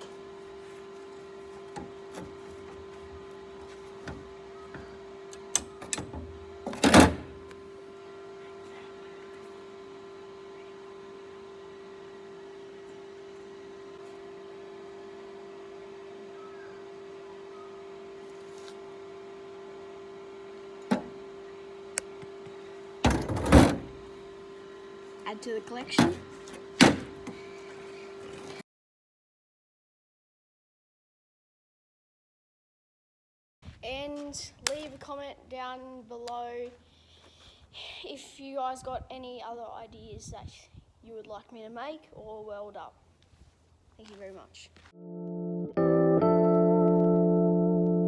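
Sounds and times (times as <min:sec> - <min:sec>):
steady hum: 0:00.0 - 0:28.6.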